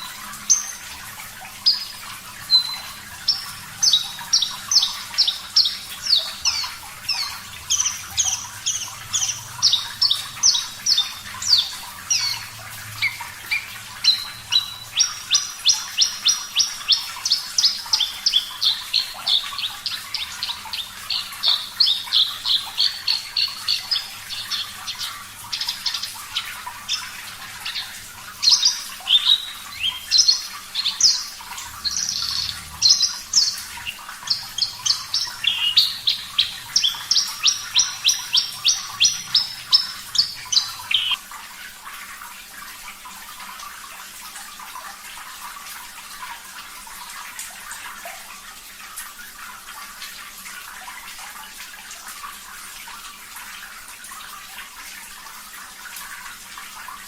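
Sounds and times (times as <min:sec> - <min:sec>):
lark singing chirping song: 0:00.0 - 0:00.9, 0:01.6 - 0:41.2.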